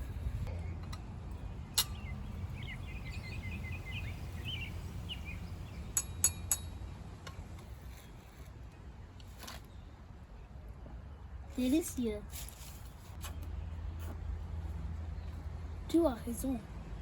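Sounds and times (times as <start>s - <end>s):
low background rumble: 0.0s - 7.8s
high bird-like chirps: 1.6s - 6.8s.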